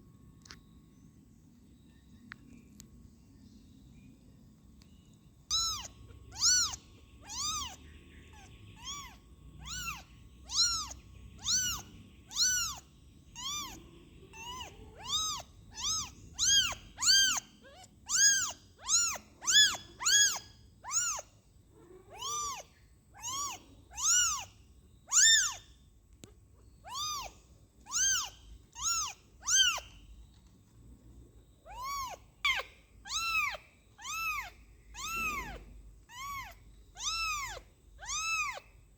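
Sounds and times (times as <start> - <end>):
kitten mewing: 5.5 - 12.8, 13.4 - 21.2, 21.8 - 24.5, 26.8 - 29.9, 31.7 - 38.6.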